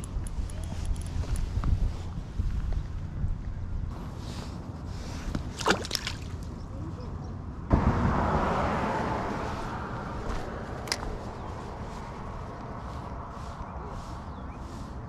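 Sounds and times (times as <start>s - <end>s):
water splashing and sloshing: 4.1s - 6.6s.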